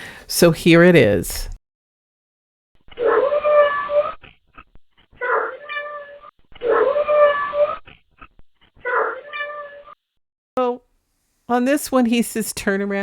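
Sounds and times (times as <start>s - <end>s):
cat meowing: 3.0s - 4.3s, 5.2s - 8.0s, 8.8s - 10.0s.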